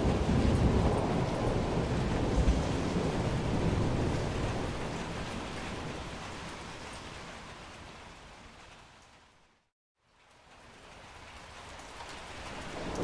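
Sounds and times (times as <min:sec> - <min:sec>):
low thunder rumble: 0:00.0 - 0:06.5
steady rain: 0:00.0 - 0:13.0.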